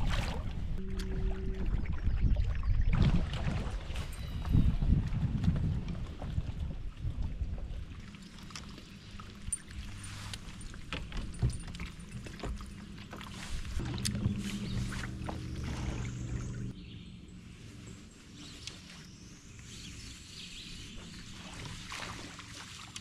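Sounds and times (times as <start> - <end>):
low steady hum: 0.0 - 3.6, 7.3 - 22.8
water splashing: 0.0 - 16.8, 20.7 - 23.0.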